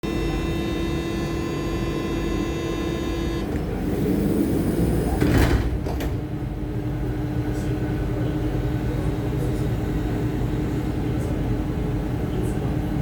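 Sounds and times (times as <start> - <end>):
buzzing hum on a train: 0.0 - 13.0
train low rumble: 3.3 - 13.0.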